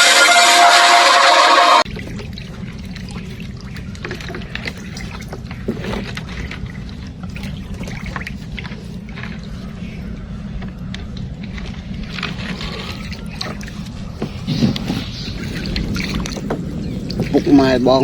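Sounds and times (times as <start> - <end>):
music: 0.0 - 1.8
floodwater rushing and trickling: 0.0 - 18.0
low rumble: 1.8 - 18.0
faint small splashes: 1.9 - 18.0.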